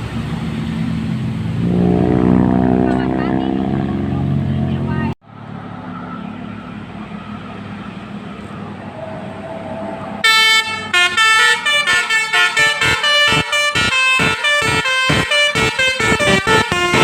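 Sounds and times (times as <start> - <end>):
bus engine running: 0.0 - 17.0
multi-trumpet horn melody: 1.6 - 3.4, 10.2 - 17.0.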